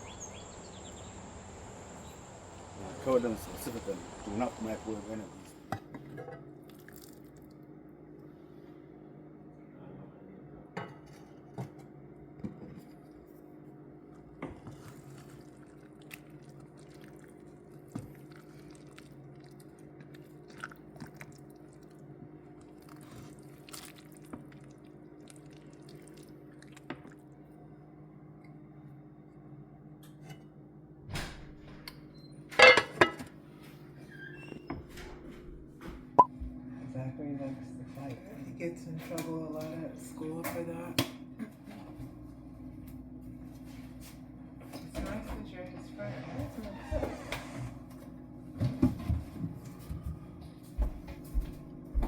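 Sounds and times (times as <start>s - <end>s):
steady low hum: 0.0s - 5.6s
dishes and pots clinking: 32.6s - 33.4s.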